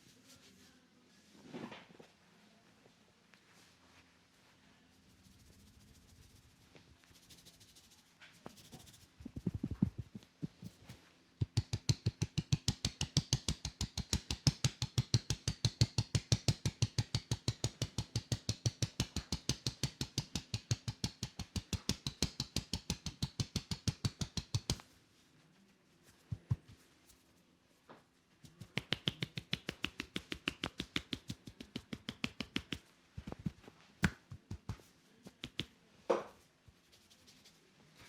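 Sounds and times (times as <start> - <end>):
hands slapping in massage: 8.5 - 24.8, 26.2 - 26.8, 28.4 - 36.4.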